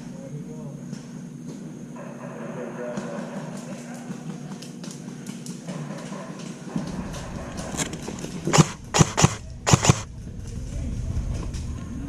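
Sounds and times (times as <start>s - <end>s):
airsoft gun shots: 7.8s - 10.1s.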